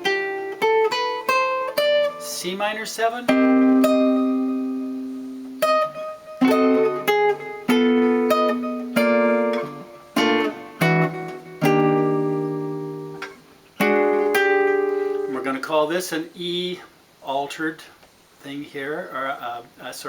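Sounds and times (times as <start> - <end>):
guitar plucked jazz chords: 0.0 - 15.9.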